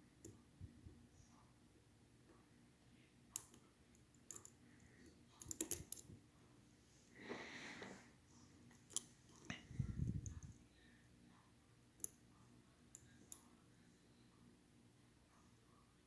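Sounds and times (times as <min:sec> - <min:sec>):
lock picks clicking: 0:04.2 - 0:04.6, 0:05.4 - 0:06.1.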